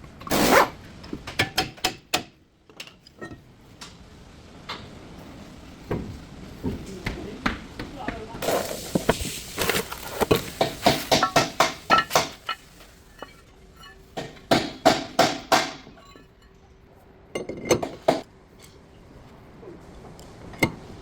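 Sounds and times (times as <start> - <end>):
hammer striking metal: 10.6 - 12.6, 13.2 - 16.2.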